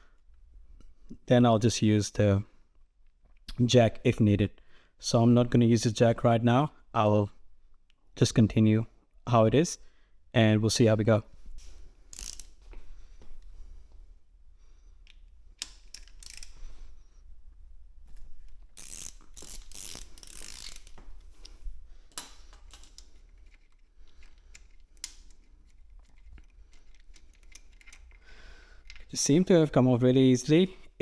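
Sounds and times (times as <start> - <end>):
hand tools clicking: 12.1 - 12.5, 15.6 - 16.6, 18.8 - 21.5.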